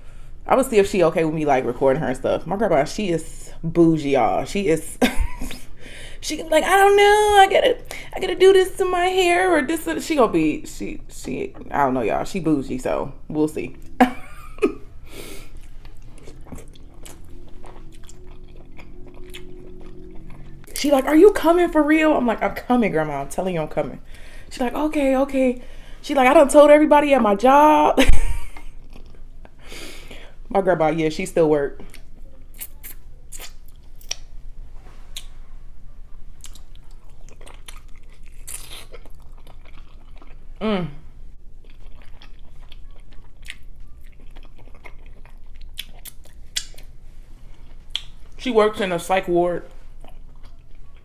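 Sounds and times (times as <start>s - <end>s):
close chewing with wet smacks: 15.5s - 21.0s, 28.8s - 29.6s, 36.1s - 40.6s, 41.5s - 48.4s, 49.8s - 51.0s
sharp crunches while eating: 36.4s - 40.4s, 41.6s - 47.0s.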